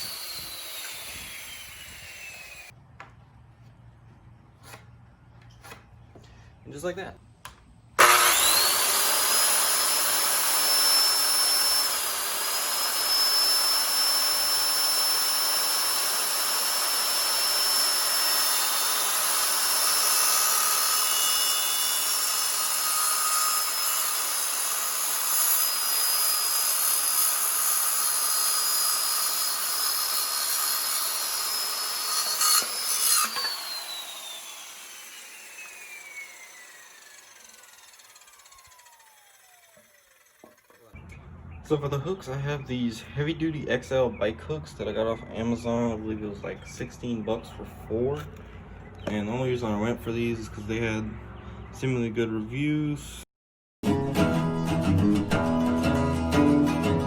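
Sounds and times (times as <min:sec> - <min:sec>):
power saw cutting wood: 0:00.0 - 0:02.8, 0:08.0 - 0:41.1.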